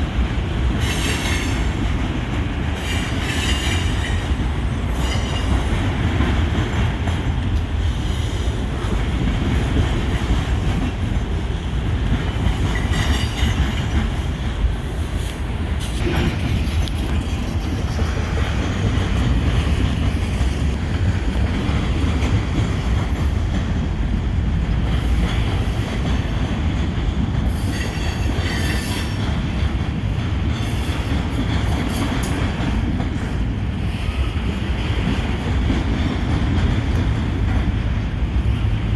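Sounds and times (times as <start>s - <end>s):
freight train cars rolling: 0.0s - 38.9s.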